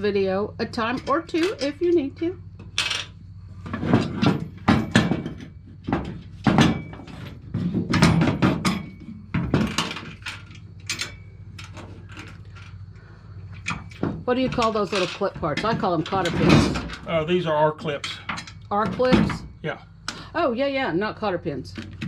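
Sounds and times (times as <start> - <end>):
steel parts knocking and clinking: 0.9 - 2.0, 3.8 - 12.8, 17.9 - 20.2.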